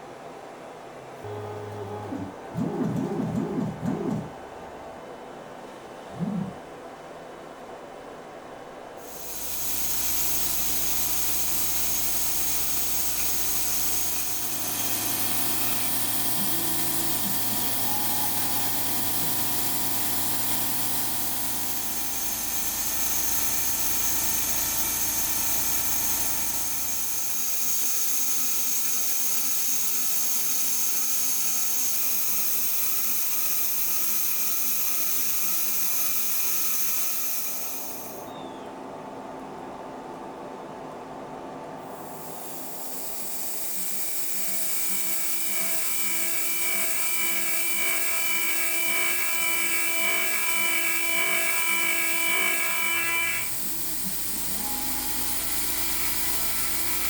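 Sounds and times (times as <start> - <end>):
hiss of metal cutting: 9.1 - 28.4, 29.6 - 38.2, 41.9 - 47.6, 51.8 - 57.0
milling machine spindle whine: 9.1 - 38.2, 42.0 - 57.0.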